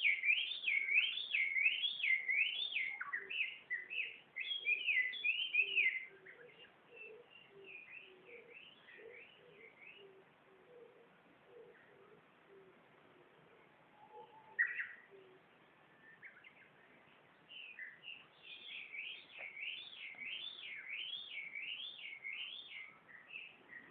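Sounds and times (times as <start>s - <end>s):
loud warbling bird song: 0.0s - 12.2s, 13.4s - 23.9s.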